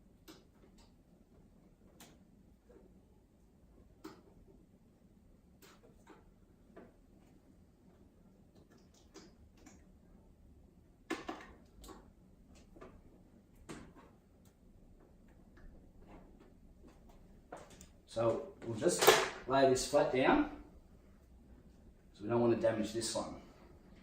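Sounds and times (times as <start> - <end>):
faint clicks and taps: 11.1 - 18.7.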